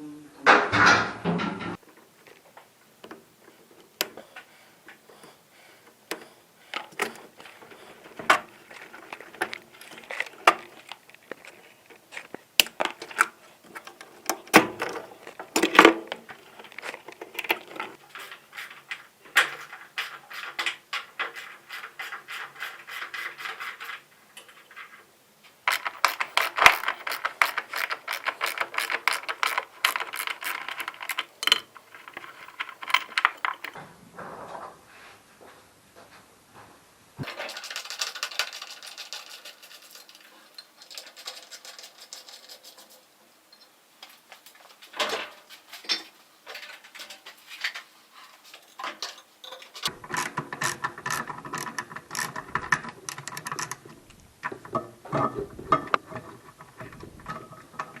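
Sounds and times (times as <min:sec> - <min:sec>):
metal parts knocking and clattering: 0:06.1 - 0:33.8, 0:37.2 - 0:58.0
ratchet wrench clicking: 0:25.7 - 0:33.7.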